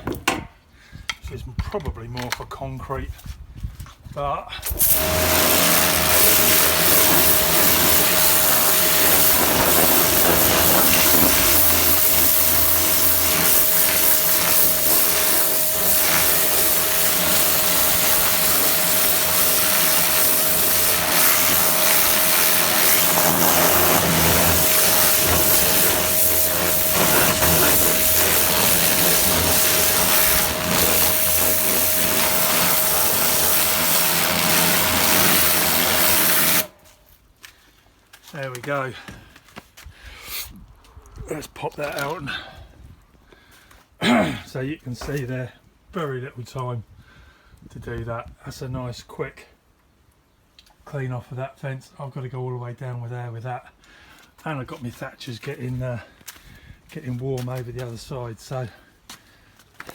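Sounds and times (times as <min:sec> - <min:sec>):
pressure washer jet hissing: 0:04.7 - 0:36.8
machine whine: 0:04.8 - 0:36.7.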